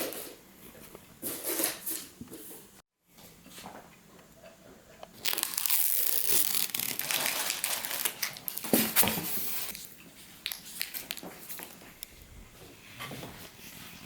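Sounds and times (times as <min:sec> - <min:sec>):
packaging tearing and crumpling: 0:05.2 - 0:09.0, 0:10.5 - 0:12.0.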